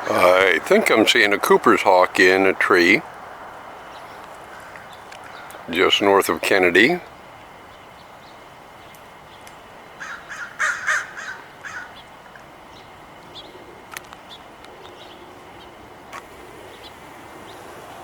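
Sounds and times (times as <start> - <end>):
crow cawing: 4.4 - 5.7, 10.0 - 12.0.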